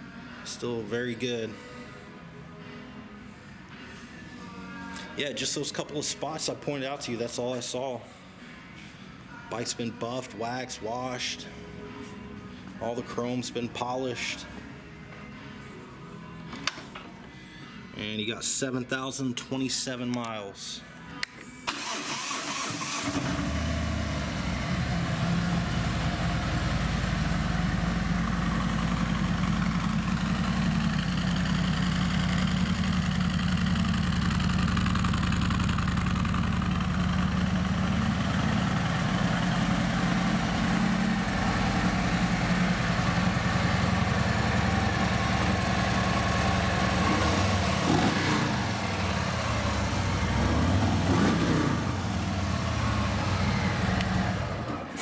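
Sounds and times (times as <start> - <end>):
starter motor cranking: 21.7 - 23.5
motorcycle engine idling: 24.0 - 54.6.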